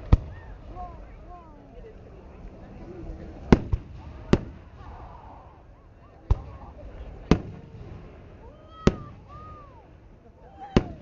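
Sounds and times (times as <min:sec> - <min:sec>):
fireworks bangs: 0:00.0 - 0:01.4, 0:03.1 - 0:11.0
woman whooping: 0:08.4 - 0:11.0.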